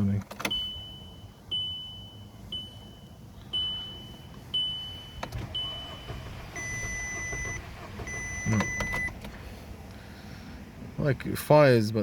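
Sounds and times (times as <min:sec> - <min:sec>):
car dashboard warning ding: 0:00.4 - 0:09.2
low steady beep: 0:00.4 - 0:09.2.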